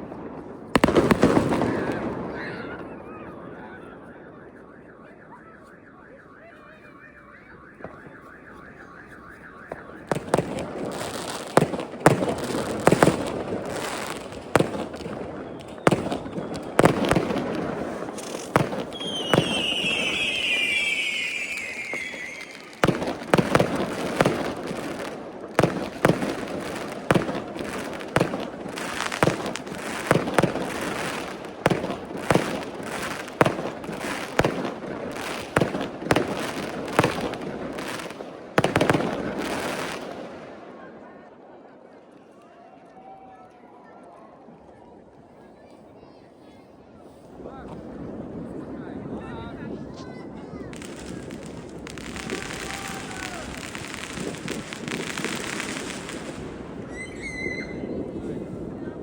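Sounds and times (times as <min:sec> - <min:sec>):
fireworks bangs and crackling: 0:00.0 - 0:41.6, 0:47.2 - 0:59.0
falling firework whistle: 0:13.6 - 0:27.4, 0:50.8 - 0:58.3.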